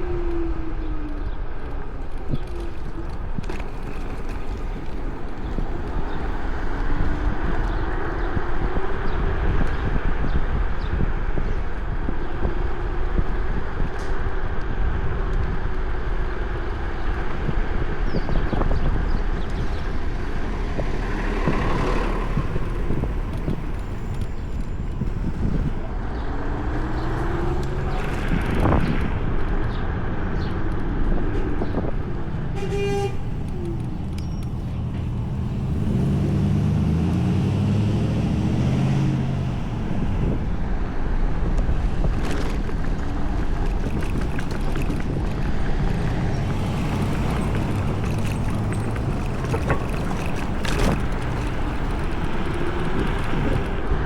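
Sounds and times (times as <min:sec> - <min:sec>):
cars passing: 0:00.0 - 0:54.0
wind and road noise: 0:00.0 - 0:54.0
heavy vehicle engine passing: 0:19.7 - 0:54.0.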